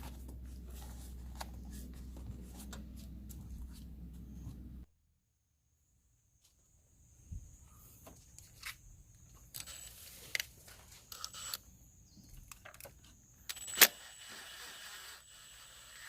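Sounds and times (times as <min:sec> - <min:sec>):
rustling and scraping: 0:00.0 - 0:04.7
faint high whine: 0:04.2 - 0:16.0.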